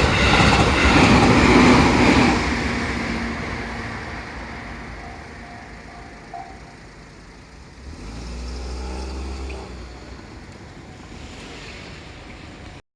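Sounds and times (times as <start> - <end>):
traffic hum: 0.0 - 12.8
vehicle driving past: 11.0 - 12.8.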